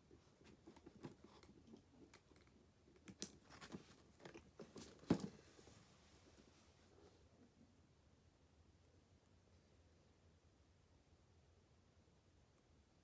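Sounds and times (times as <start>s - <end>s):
handbag and packaging clicks and rustles: 0.4s - 5.8s.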